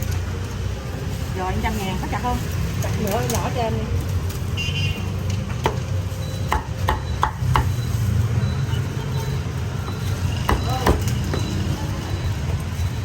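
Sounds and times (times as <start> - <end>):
cleaver chopping roast pork: 5.6 - 7.8, 10.4 - 11.4.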